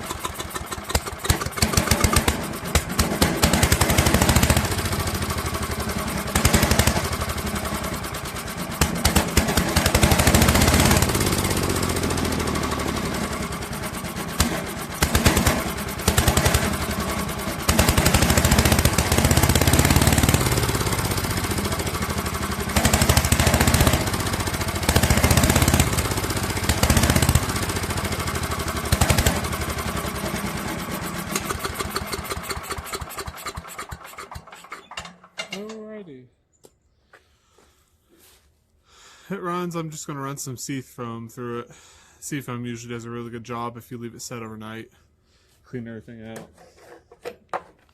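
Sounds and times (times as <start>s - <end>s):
small engine running unevenly: 0.0s - 35.3s.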